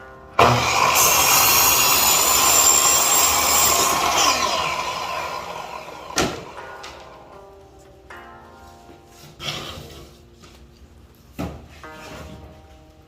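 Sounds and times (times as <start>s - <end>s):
power tool whining: 0.4s - 6.7s.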